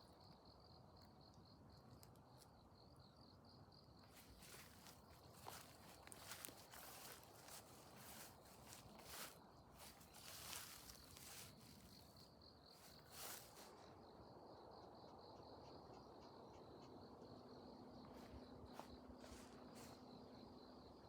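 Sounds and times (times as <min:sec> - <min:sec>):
insect chirping trill: 0:00.0 - 0:21.0
rustles: 0:04.4 - 0:12.2.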